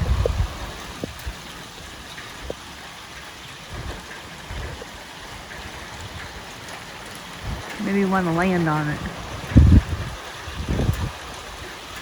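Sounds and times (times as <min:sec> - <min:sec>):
wind gusting on microphone: 0:00.0 - 0:02.8, 0:03.5 - 0:12.0
light rain: 0:00.0 - 0:12.0
raindrop ticks: 0:00.0 - 0:12.0.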